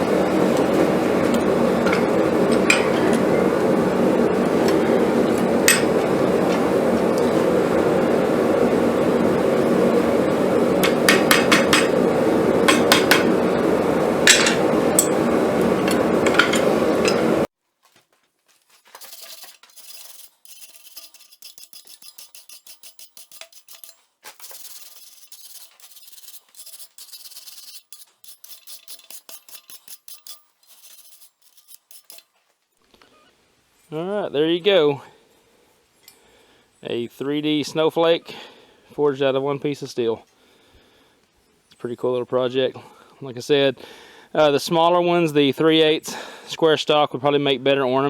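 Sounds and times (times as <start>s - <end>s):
forge roaring: 0.0s - 17.5s
scraping strokes on steel: 0.0s - 17.5s, 18.8s - 32.4s.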